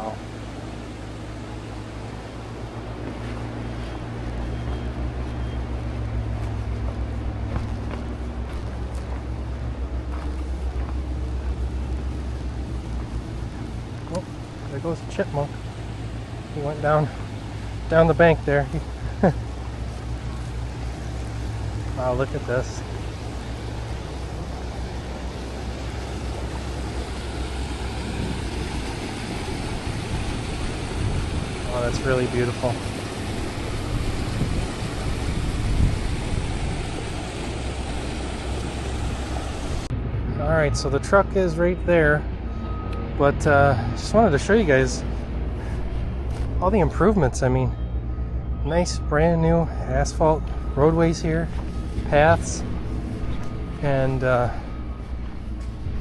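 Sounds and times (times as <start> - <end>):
stream flowing: 0.0 - 39.9
rushing noise with low rumble: 0.0 - 56.0.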